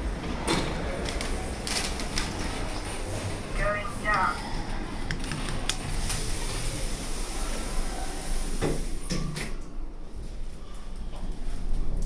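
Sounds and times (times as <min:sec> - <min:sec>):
lift doors sliding shut: 0:04.5 - 0:09.6.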